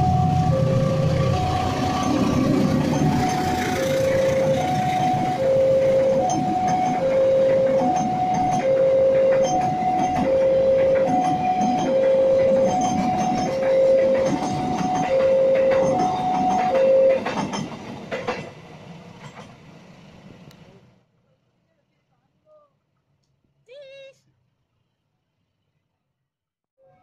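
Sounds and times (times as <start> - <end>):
two-tone crossing alarm: 0.0 - 17.5
train wheels clicking on rails: 6.1 - 19.8.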